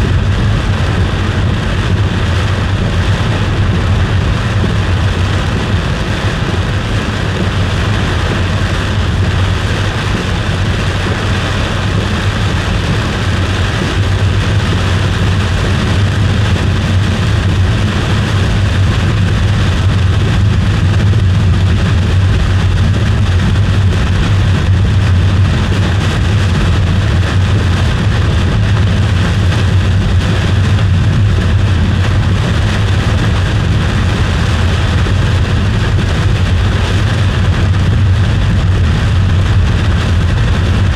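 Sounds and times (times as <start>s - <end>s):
car driving at speed: 0.0s - 40.9s.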